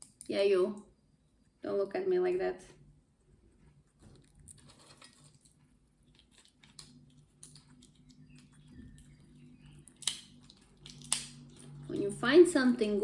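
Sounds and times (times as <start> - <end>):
low steady hum: 0.0 - 13.0
bird beak crunching nuts: 4.1 - 11.9.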